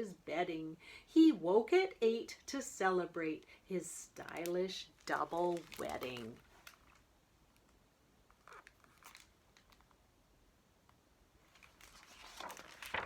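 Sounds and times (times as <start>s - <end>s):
paper rustling: 4.2s - 7.0s, 7.6s - 10.0s, 11.4s - 13.0s
page turning swish: 11.5s - 13.0s.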